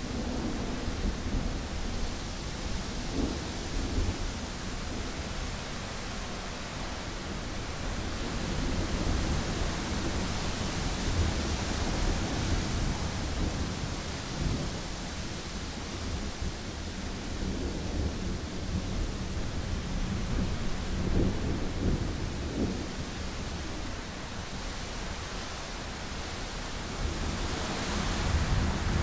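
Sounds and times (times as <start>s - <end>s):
wind: 0.0s - 29.0s
low thunder rumbling: 11.1s - 24.4s.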